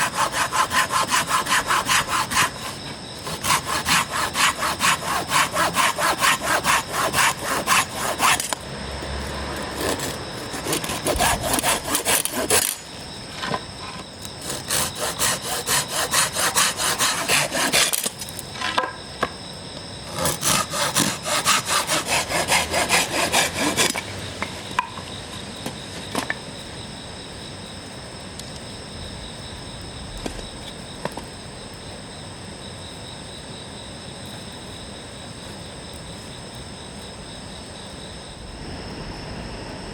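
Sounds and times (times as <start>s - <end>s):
hand saw cutting wood: 0.0s - 8.6s, 9.5s - 12.9s, 14.4s - 18.2s, 20.1s - 24.1s.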